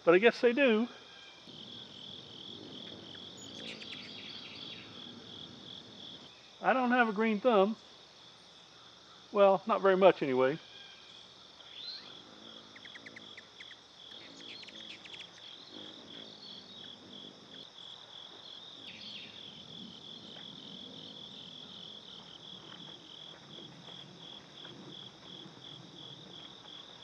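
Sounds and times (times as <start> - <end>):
crickets chirping: 0.0 - 27.0.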